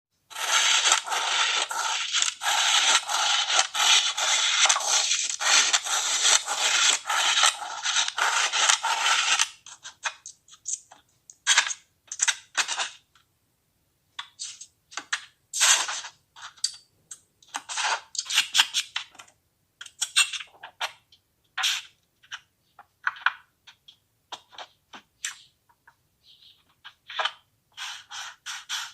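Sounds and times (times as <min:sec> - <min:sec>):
sand being cut crackly scraping: 0:00.3 - 0:09.4.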